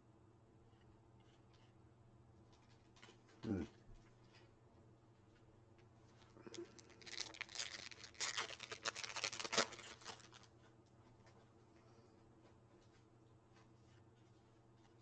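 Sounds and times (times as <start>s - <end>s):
card wrapper rustling: 6.7s - 10.5s.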